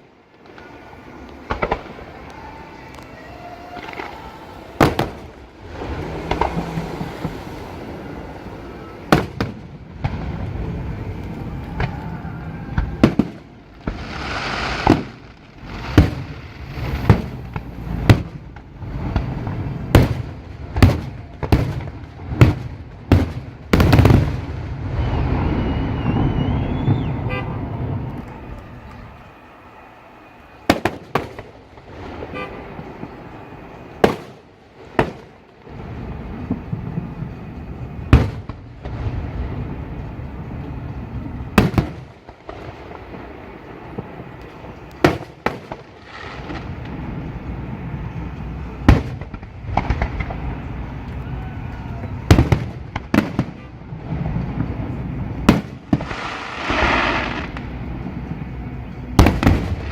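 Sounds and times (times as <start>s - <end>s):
faint rising whistle: 24.8s - 30.7s.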